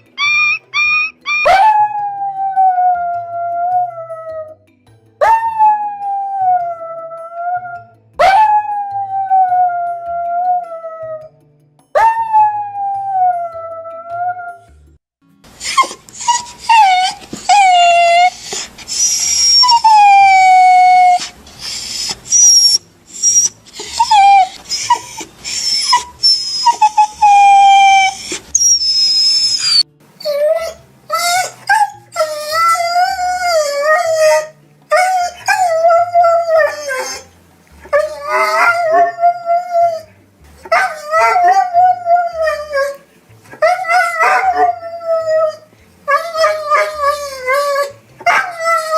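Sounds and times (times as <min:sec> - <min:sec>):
dog whimpers: 0:00.0 - 0:01.8, 0:15.6 - 0:37.2, 0:37.9 - 0:40.1
high-pitched puppy cries: 0:00.0 - 0:02.1, 0:15.6 - 0:37.3, 0:37.9 - 0:40.1, 0:43.5 - 0:48.9
dogs whining and howling: 0:00.0 - 0:04.6, 0:05.2 - 0:11.3, 0:12.0 - 0:14.8, 0:15.5 - 0:48.9.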